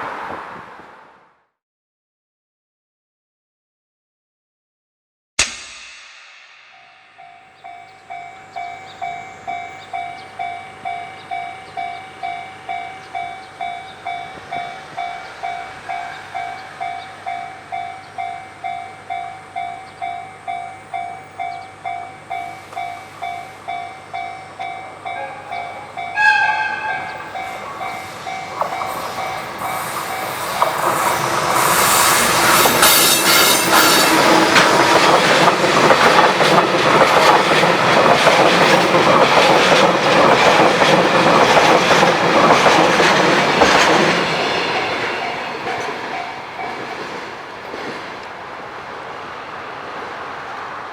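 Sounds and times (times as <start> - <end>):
train wheels rumbling and clattering: 5.8 - 50.9
level crossing warning bell: 7.1 - 31.3, 32.6 - 47.2
locomotive horn blast: 25.1 - 34.8.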